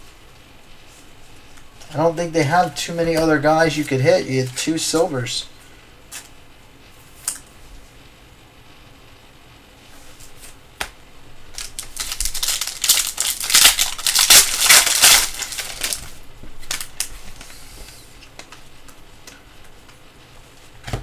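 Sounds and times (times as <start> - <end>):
foil wrapper tearing and crinkling: 11.5 - 17.2
cards being handled: 11.5 - 17.6.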